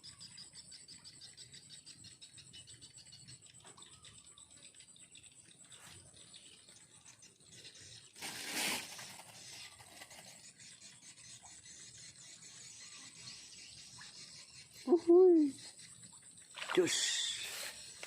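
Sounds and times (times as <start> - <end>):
brief rustling scrape: 8.2 - 10.3.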